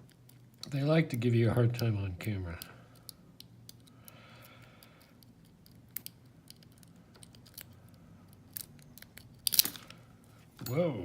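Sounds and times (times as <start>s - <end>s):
lock pick clicking in padlock: 2.5s - 10.0s
metallic scrape of lock pick: 5.0s - 10.0s.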